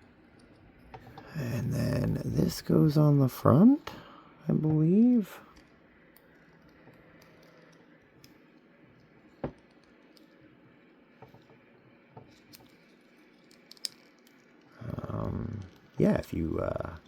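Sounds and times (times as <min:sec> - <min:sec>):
plastic model parts clicking: 0:12.3 - 0:16.2.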